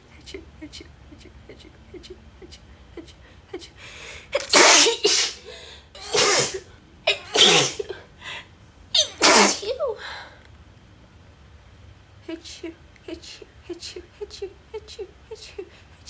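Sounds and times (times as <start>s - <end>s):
woman sneezing: 4.4s - 8.0s, 9.0s - 9.9s.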